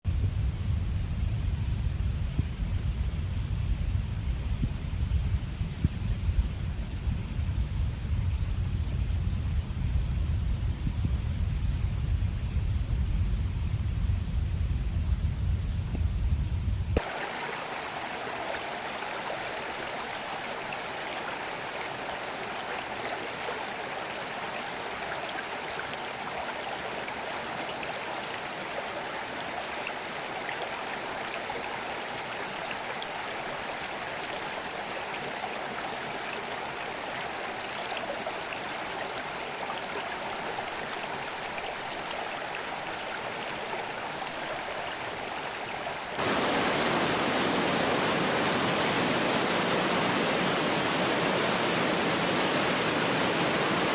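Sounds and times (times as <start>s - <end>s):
creek water over stones: 17.0s - 53.9s.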